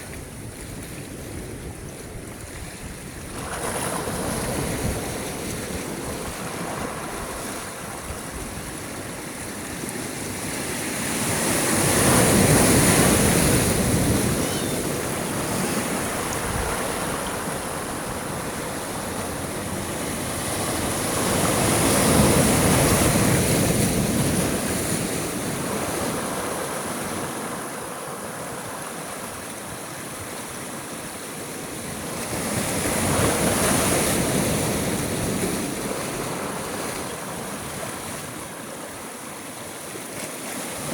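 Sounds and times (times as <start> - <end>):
sea waves: 0.0 - 40.9.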